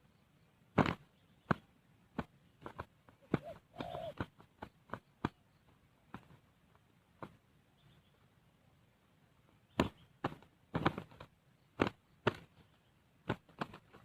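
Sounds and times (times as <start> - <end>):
dove wings slapping: 0.7 - 6.5, 9.7 - 14.0.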